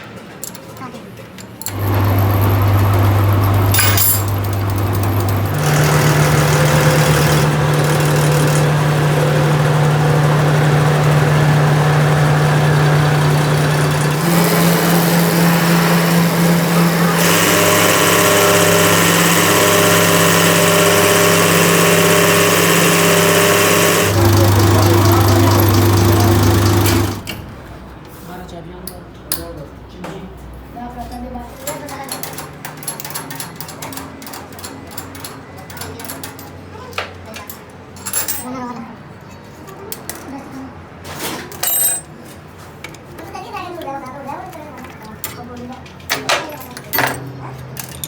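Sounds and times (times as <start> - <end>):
machinery humming: 1.6 - 28.0.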